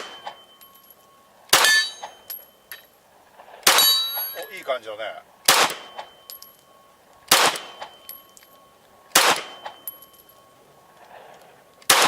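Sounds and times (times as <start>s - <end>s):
faint ringing tone: 0.0s - 11.9s
pistol shots with echo: 1.5s - 2.2s, 3.6s - 4.4s, 5.4s - 6.2s, 7.3s - 8.2s, 9.1s - 9.9s.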